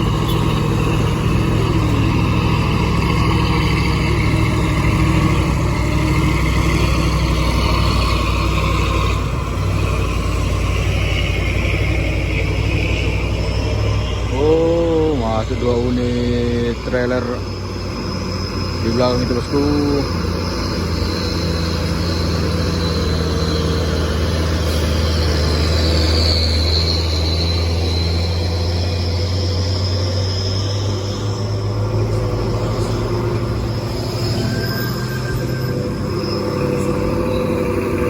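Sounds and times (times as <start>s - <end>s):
truck diesel engine rumbling: 0.0s - 38.0s
faint high whine: 12.0s - 38.0s.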